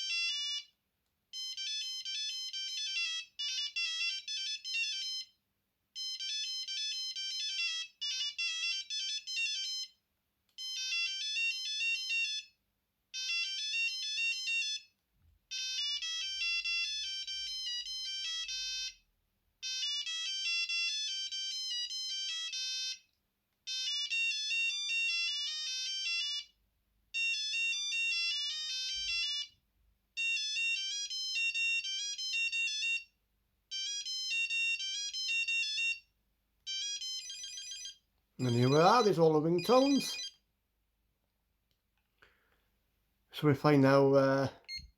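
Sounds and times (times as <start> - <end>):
phone ringtone beeping melodies: 0.0 - 0.7, 1.4 - 5.4, 6.0 - 10.0, 10.6 - 12.6, 13.2 - 14.9, 15.5 - 23.1, 23.7 - 26.6, 27.2 - 29.6, 30.2 - 36.1, 36.7 - 40.4, 44.6 - 44.9.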